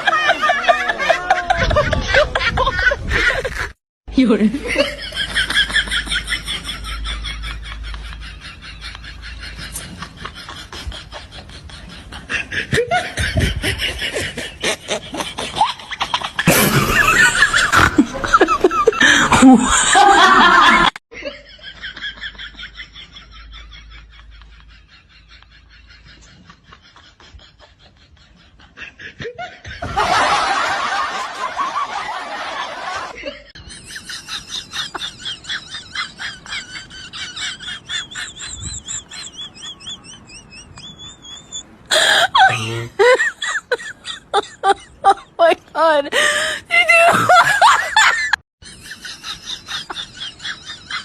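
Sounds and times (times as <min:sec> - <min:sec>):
people laughing: 0:00.0 - 0:03.8, 0:04.5 - 0:51.0.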